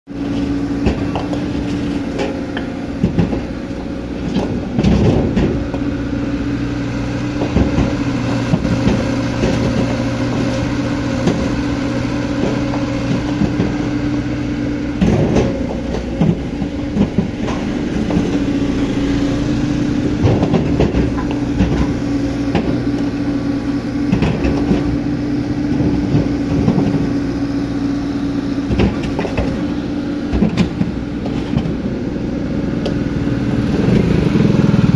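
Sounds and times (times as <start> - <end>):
excavator diesel engine running: 0.1 - 34.9
bucket clanks and knocks: 4.2 - 5.8, 15.0 - 19.0, 25.7 - 27.2.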